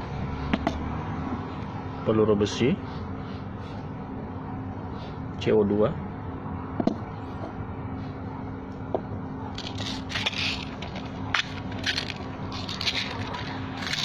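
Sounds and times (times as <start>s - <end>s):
small metal objects clinking: 9.6s - 14.0s.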